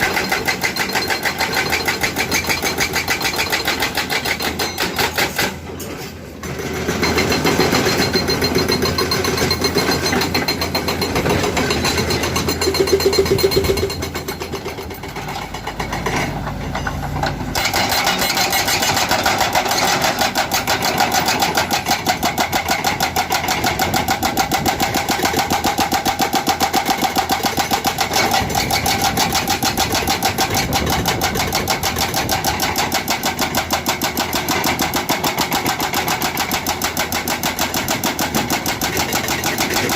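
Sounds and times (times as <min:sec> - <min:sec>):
excavator engine running: 0:00.0 - 0:39.9
hydraulic breaker hammering rock: 0:00.0 - 0:39.9.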